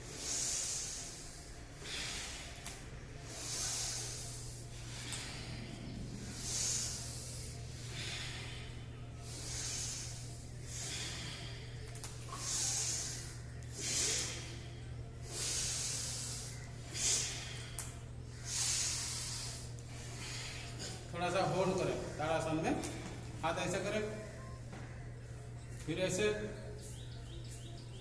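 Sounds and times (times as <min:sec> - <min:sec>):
person breathing hard: 0:00.0 - 0:21.2
steady low hum: 0:00.0 - 0:28.0.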